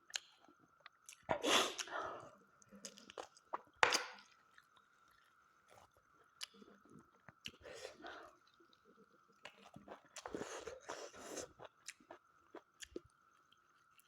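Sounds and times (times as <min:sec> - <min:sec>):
faint high hum: 0:00.0 - 0:14.0
person chewing and biting: 0:09.4 - 0:13.0.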